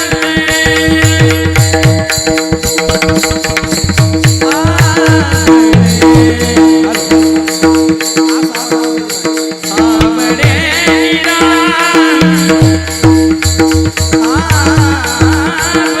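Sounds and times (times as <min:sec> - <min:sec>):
hand drums playing: 0:00.0 - 0:16.0
man singing: 0:00.0 - 0:16.0.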